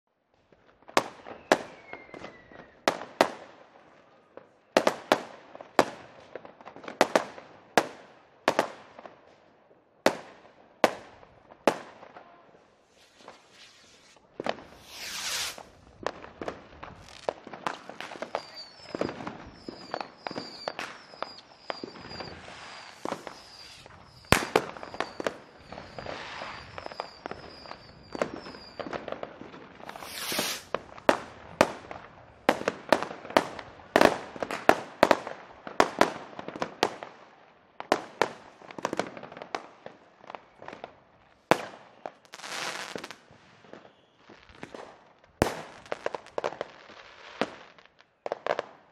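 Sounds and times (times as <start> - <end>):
fireworks bangs and pops: 0.3 - 48.9
fireworks hissing bursts: 12.8 - 15.8, 17.0 - 29.0, 29.7 - 30.8.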